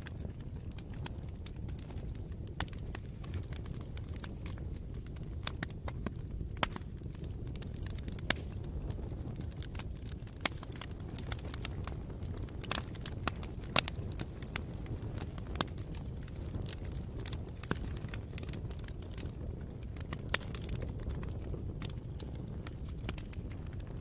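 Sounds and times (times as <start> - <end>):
campfire crackling: 0.0 - 24.0.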